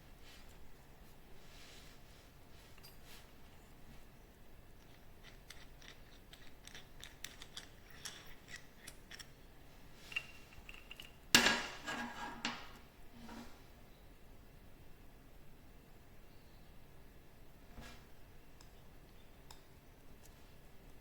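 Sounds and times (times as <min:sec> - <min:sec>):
small hard objects clicking: 0:04.8 - 0:09.3.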